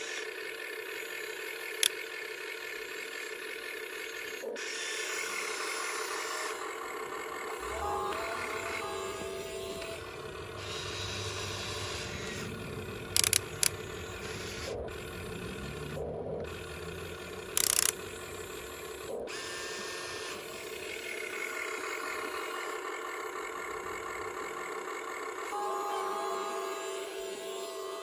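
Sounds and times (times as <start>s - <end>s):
toy excavator motors whirring: 0.0s - 28.0s
sharp loud clicks: 10.8s - 14.8s, 16.4s - 19.0s.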